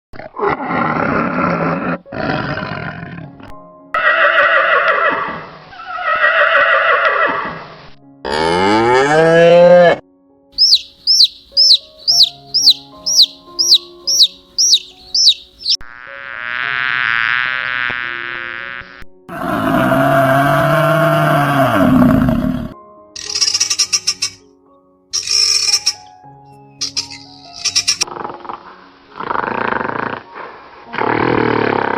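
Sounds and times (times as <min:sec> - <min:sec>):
background music: 0:00.3 - 0:31.9
farm animal calls: 0:10.6 - 0:15.8
quick high chirps: 0:10.6 - 0:15.8, 0:23.2 - 0:24.4, 0:25.2 - 0:26.1, 0:26.8 - 0:28.0.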